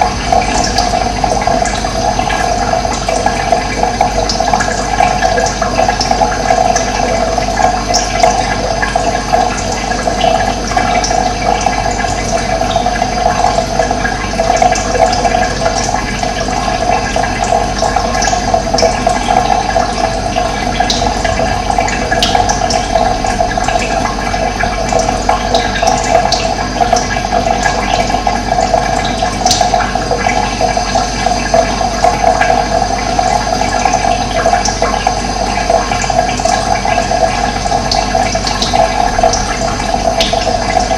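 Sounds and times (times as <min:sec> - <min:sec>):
running water rushing: 0:00.0 - 0:40.9.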